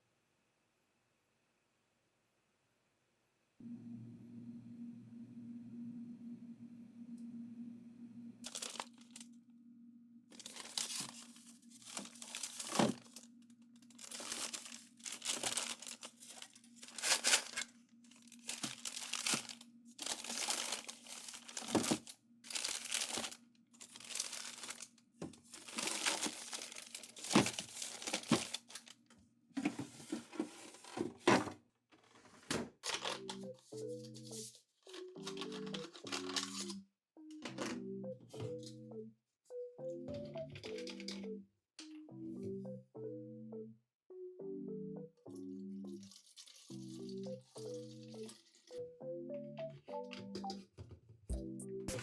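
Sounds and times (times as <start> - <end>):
packaging crinkling: 8.4 - 9.2, 10.3 - 28.9, 32.8 - 33.4, 34.8 - 36.7, 47.6 - 48.7.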